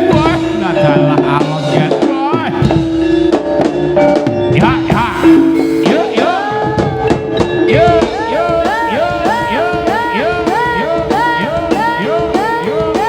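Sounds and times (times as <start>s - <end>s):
held gamelan tone: 0.0s - 13.0s
steady drum beat: 0.0s - 13.0s
gliding repeated melody: 4.8s - 6.6s.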